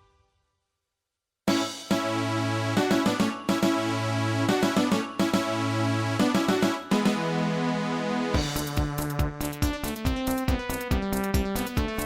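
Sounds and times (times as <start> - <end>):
synthesized midi music: 1.5 - 10.0
drum hits: 8.4 - 9.8.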